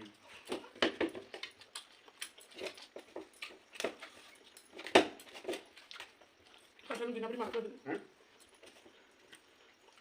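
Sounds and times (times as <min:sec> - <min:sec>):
wet eating clicks and smacks: 0:01.3 - 0:06.7.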